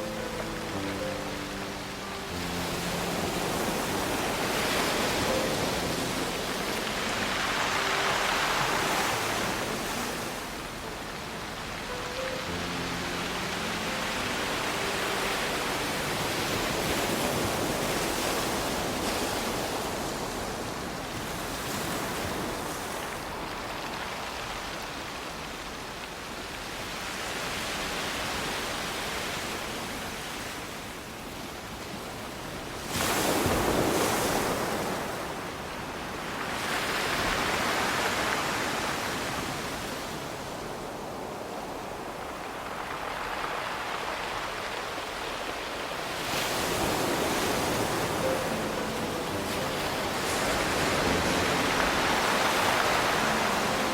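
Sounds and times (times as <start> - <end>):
surf breaking on pebble beach: 46.1 - 53.9.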